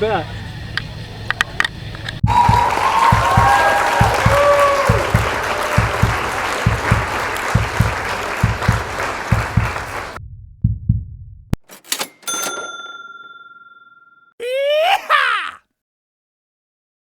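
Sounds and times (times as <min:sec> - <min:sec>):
low thumping beat: 0:02.2 - 0:11.6.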